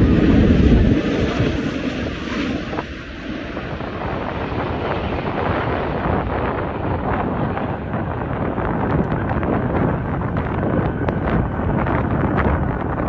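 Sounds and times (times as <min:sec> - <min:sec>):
jet engines rumbling: 0:00.0 - 0:13.0
wind buffeting microphone: 0:00.0 - 0:13.0.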